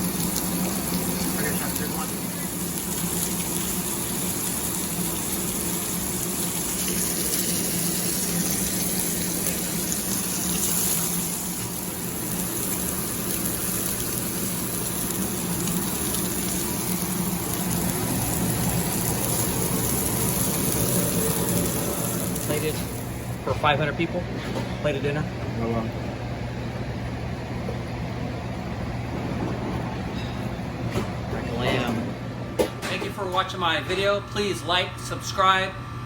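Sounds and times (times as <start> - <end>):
meat sizzling: 0.0 - 23.4.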